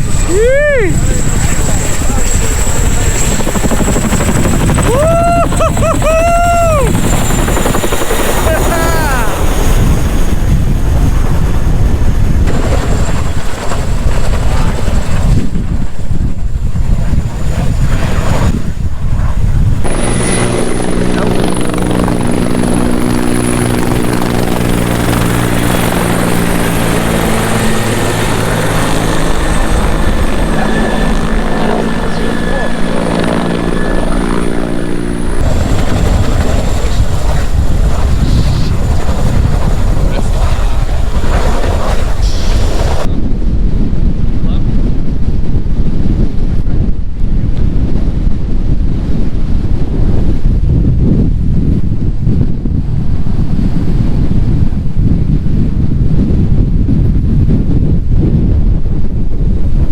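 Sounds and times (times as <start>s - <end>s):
helicopter rotor beat and engine: 0.0s - 59.9s
thin high whine: 19.8s - 25.2s.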